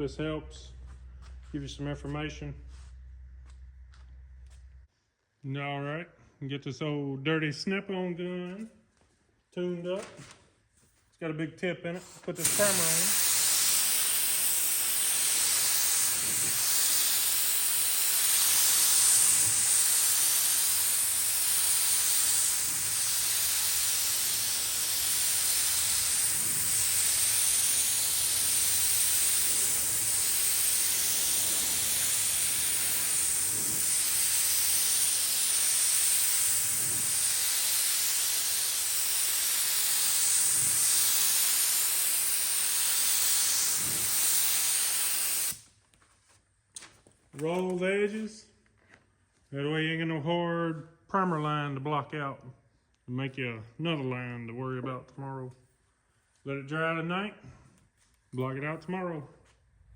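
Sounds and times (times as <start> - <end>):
air spray gun hissing: 12.4 - 45.6.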